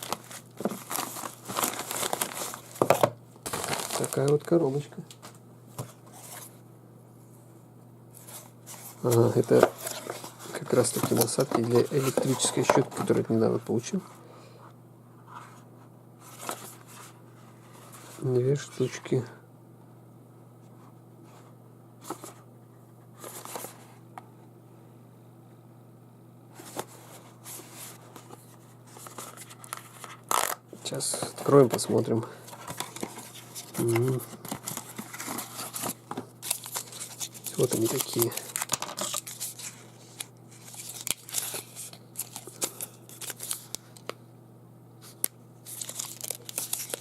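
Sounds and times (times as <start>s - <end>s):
cardboard box rustling: 0.0s - 4.3s, 8.2s - 13.2s, 32.5s - 39.8s.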